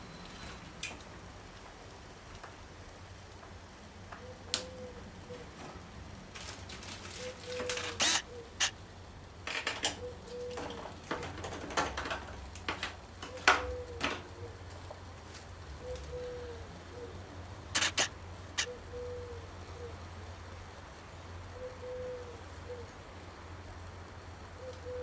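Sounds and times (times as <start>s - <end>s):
tools and parts clicking: 6.8s - 8.7s, 17.8s - 18.7s
low hoot-like tone: 17.8s - 20.1s, 21.5s - 22.9s.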